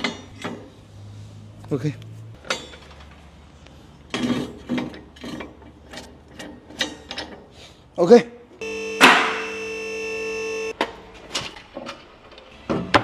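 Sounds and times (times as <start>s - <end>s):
faint low hum: 8.6s - 10.7s.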